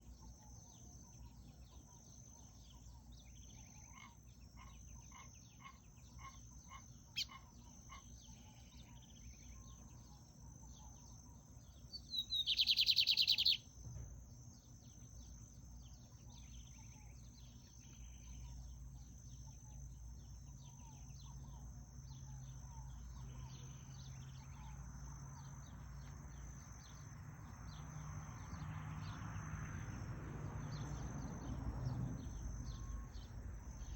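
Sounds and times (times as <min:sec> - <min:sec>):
faint high chirps: 0:00.0 - 0:13.8
songbird singing: 0:00.0 - 0:33.9.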